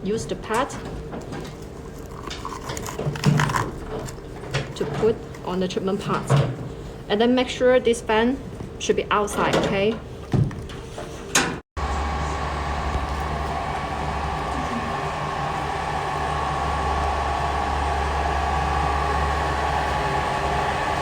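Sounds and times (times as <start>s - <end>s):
cooling fans humming: 11.8s - 21.0s
steady whining tones: 11.8s - 21.0s.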